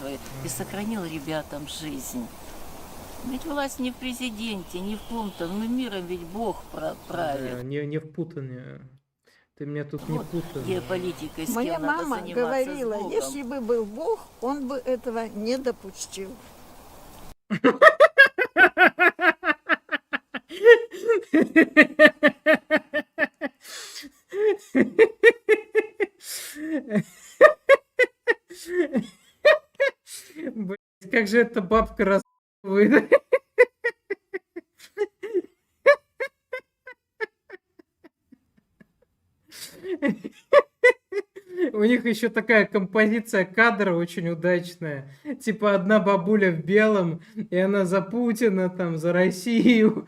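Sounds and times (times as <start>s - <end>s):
person laughing hard: 17.5s - 30.0s, 32.8s - 41.7s
breathy intake: 23.6s - 24.6s, 26.2s - 26.8s, 39.5s - 40.0s.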